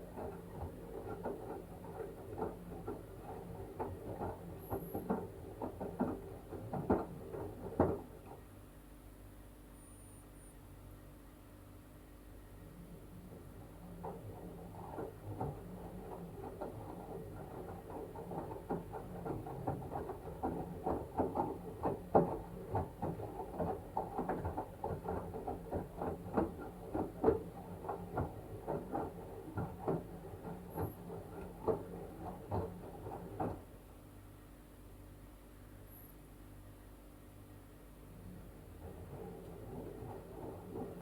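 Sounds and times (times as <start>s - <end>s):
wet laundry splashing in drum: 0.0s - 8.4s, 12.8s - 33.7s, 38.2s - 41.0s.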